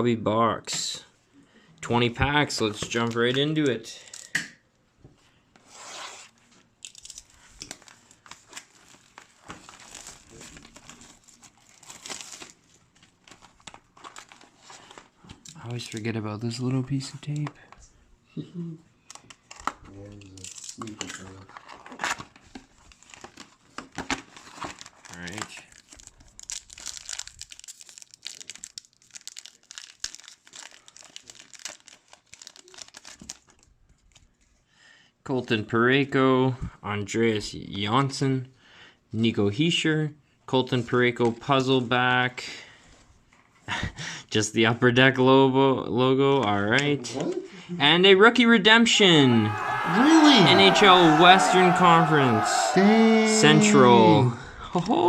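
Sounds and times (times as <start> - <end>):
plastic wrapping tearing and crinkling: 6.8 - 15.1, 19.5 - 34.1.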